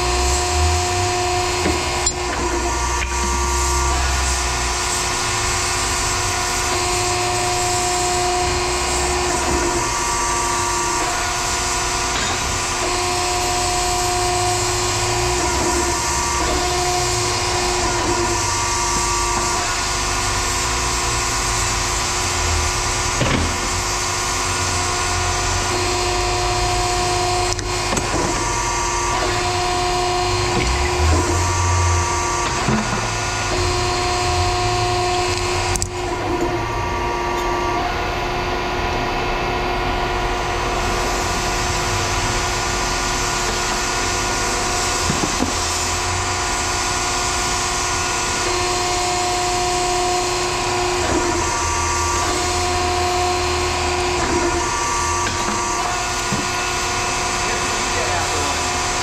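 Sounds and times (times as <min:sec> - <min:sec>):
heavy machinery running: 0:00.0 - 0:59.0
machinery whining tones: 0:00.0 - 0:59.0
knocks and clanks: 0:23.2 - 0:23.8, 0:32.4 - 0:34.0.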